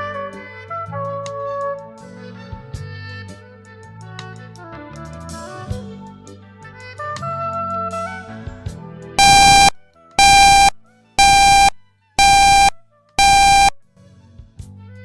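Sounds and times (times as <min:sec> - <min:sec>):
loud electronic alert beeps: 0:09.2 - 0:13.8.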